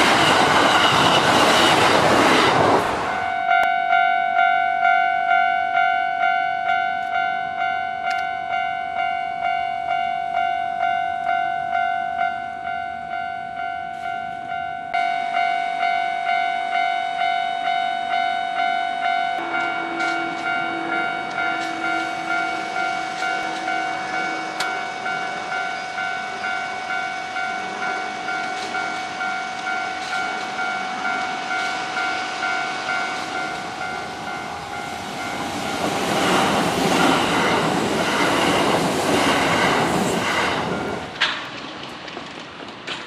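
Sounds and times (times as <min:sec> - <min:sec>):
level crossing bell clanging: 0:03.1 - 0:37.1
train wheels clattering over rail joints: 0:35.3 - 0:43.0.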